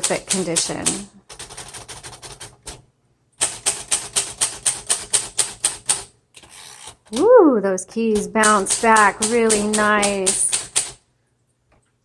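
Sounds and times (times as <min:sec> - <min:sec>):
manual typewriter keys striking: 0:00.0 - 0:02.8, 0:03.4 - 0:07.2, 0:08.2 - 0:11.0.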